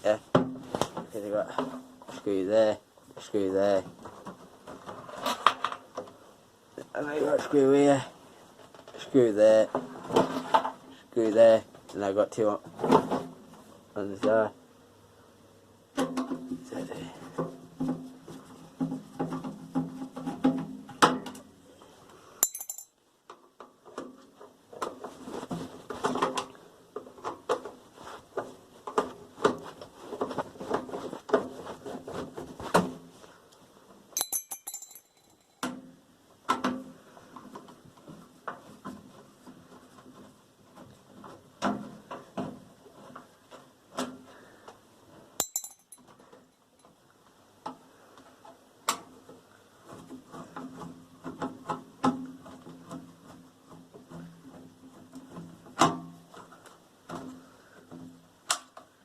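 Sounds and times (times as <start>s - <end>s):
screws clinking on sheet metal: 22.4s - 23.0s, 34.2s - 35.6s, 45.4s - 46.1s.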